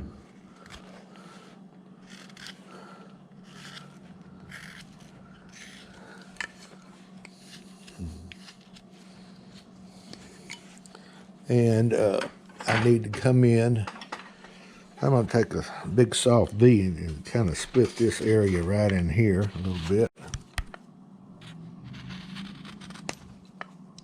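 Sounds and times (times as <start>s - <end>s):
steady low hum: 0.0s - 24.0s
carving tool scraping wood: 2.0s - 7.8s, 21.4s - 23.2s.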